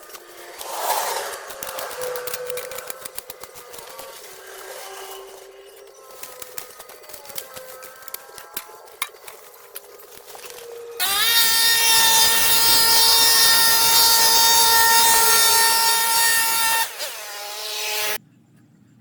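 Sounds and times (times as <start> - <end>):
power tool motor whining: 11.0 - 18.2.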